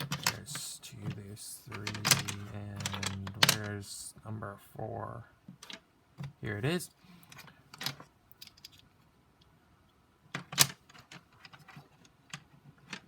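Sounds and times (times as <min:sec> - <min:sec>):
plastic puzzle pieces clicking: 0:00.0 - 0:03.8.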